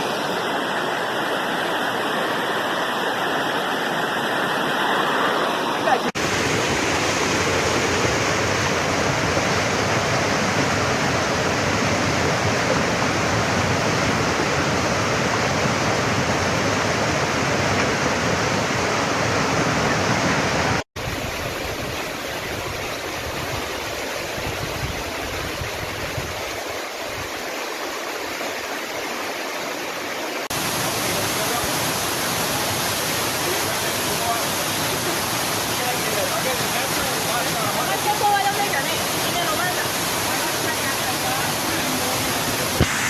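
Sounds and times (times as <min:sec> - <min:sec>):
rushing floodwater: 0:00.0 - 0:43.0.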